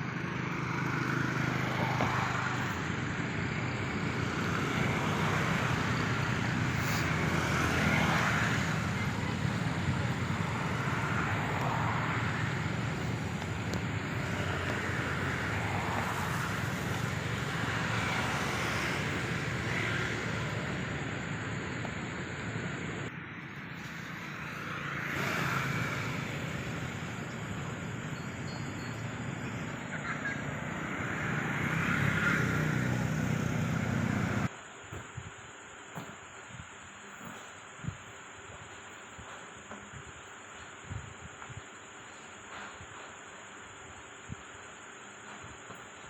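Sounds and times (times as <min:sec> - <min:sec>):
low outdoor rumble: 0:00.0 - 0:34.5.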